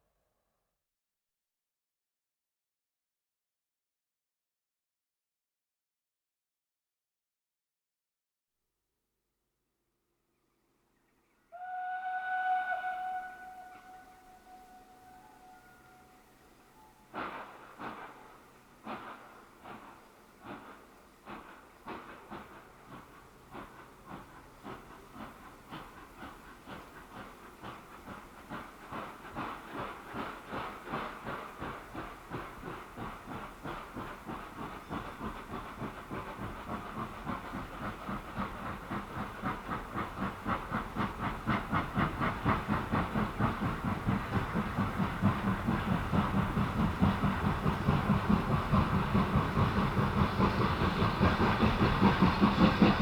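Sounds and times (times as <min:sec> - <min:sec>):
steam train chugging with hiss: 0:11.5 - 0:53.0.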